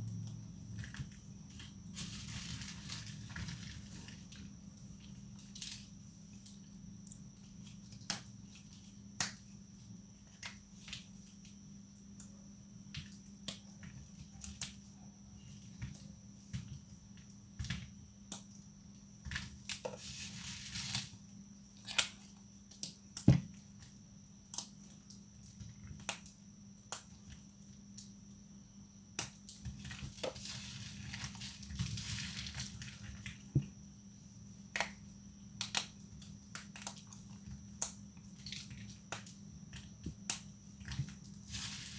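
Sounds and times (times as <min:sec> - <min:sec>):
soap plates snapping: 0:34.7 - 0:35.0, 0:35.6 - 0:37.1.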